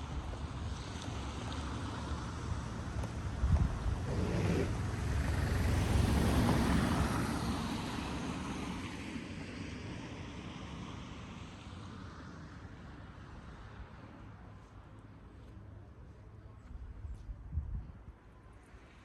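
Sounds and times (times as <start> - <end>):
vehicle passing by: 3.3 - 8.9.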